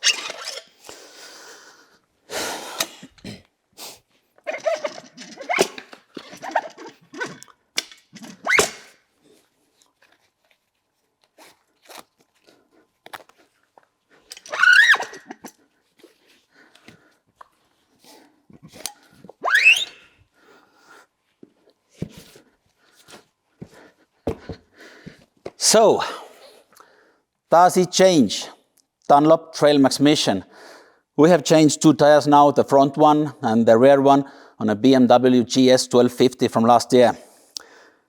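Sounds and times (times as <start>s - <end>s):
rubber tire squeaks: 0.0s - 0.8s, 4.4s - 9.1s, 14.3s - 15.6s, 19.1s - 20.2s.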